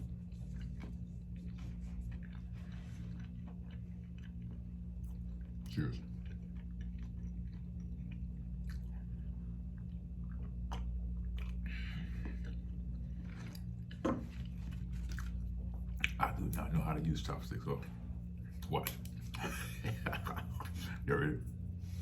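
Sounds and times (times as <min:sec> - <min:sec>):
person chewing: 0:00.0 - 0:16.8, 0:18.1 - 0:22.0.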